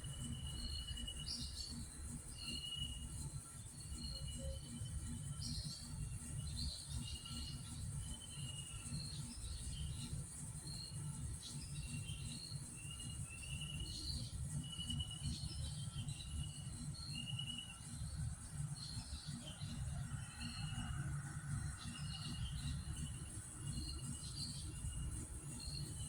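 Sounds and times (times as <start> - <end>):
steady high-pitched hiss: 0.0 - 26.0.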